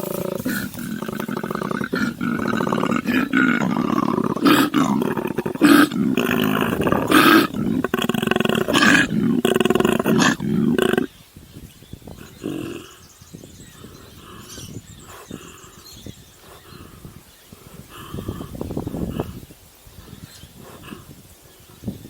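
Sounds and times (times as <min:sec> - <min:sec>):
faint rustles: 0:00.0 - 0:05.6
koala bellowing: 0:00.0 - 0:11.1.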